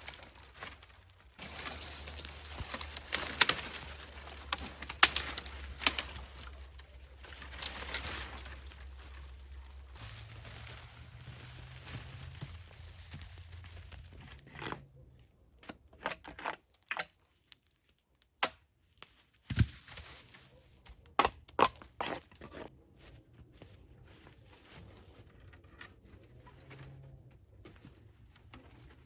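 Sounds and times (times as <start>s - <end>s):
sharp cracks and knocks: 1.4s - 8.9s.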